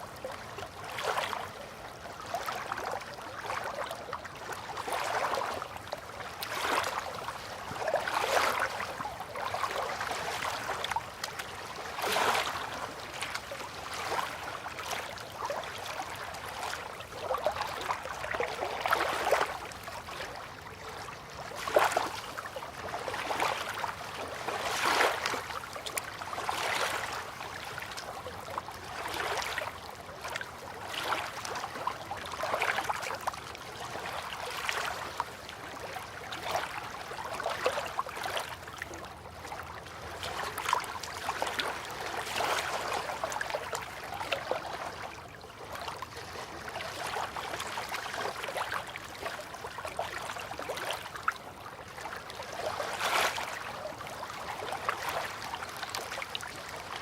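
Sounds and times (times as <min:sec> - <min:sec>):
river water lapping at bank: 0:00.0 - 0:57.0.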